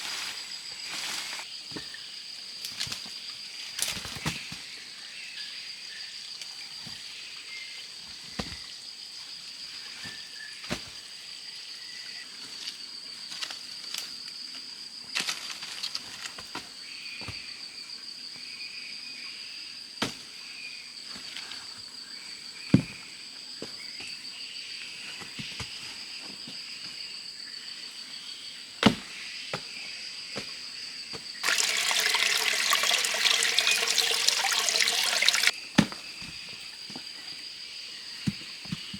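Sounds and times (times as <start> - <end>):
insects droning: 23.6 - 38.9
water pouring and splashing: 31.4 - 35.5.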